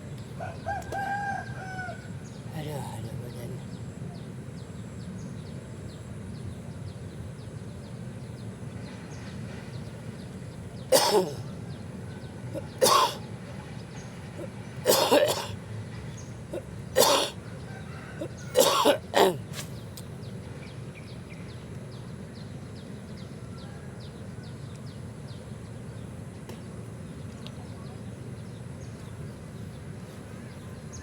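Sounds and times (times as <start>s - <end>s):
person coughing: 10.9s - 11.5s, 12.6s - 13.2s, 14.9s - 15.6s, 16.5s - 17.4s, 18.2s - 19.4s.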